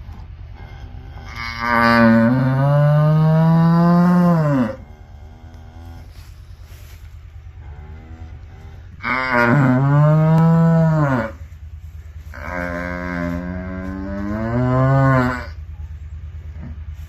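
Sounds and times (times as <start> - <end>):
steady low hum: 0.0 - 17.0
cow mooing: 0.1 - 6.2, 7.6 - 11.5, 12.3 - 15.7.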